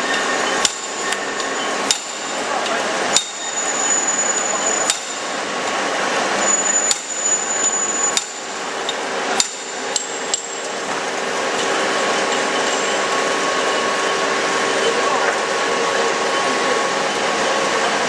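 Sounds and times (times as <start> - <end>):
hammer striking steel: 0.0 - 5.4, 6.7 - 10.7
workshop machinery hum: 0.0 - 18.0.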